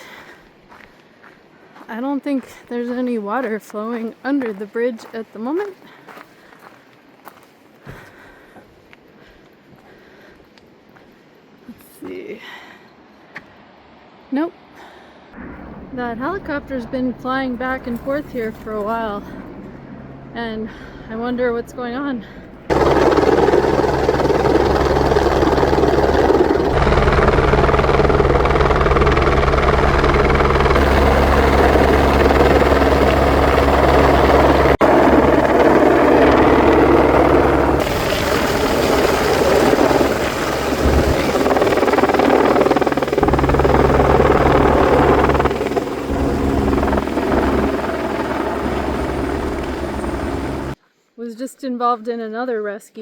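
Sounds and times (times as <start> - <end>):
helicopter rotor beating: 15.6 - 20.3, 22.4 - 50.8
wind buffeting microphone: 22.7 - 50.8.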